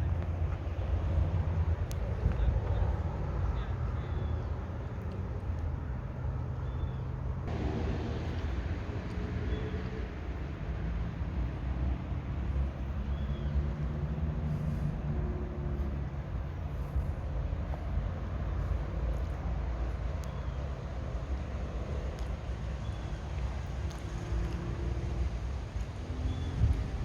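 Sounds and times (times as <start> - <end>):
vehicle engine rumble: 0.0 - 27.0.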